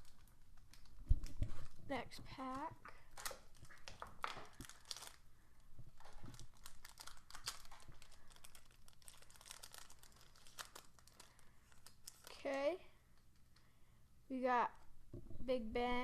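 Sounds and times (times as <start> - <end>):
foil wrapper crinkling and tearing: 0.0 - 1.8, 2.4 - 12.7.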